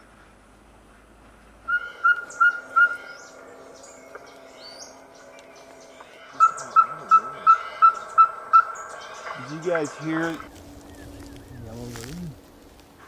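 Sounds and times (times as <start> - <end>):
bird whistling notes: 1.7 - 12.1
faint bird chirps: 1.7 - 12.4.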